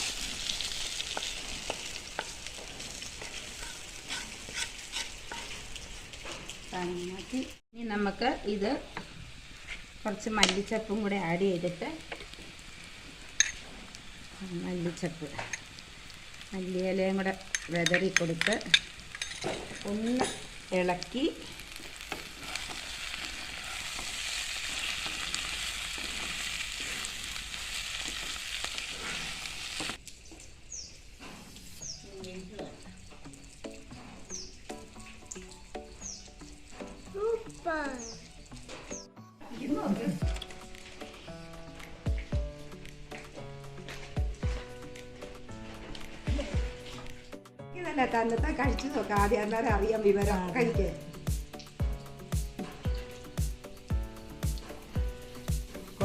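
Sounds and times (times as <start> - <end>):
food sizzling in a pan: 0.0 - 56.0
spatula scraping and tapping pan: 0.1 - 6.6, 17.4 - 27.2, 41.8 - 47.2.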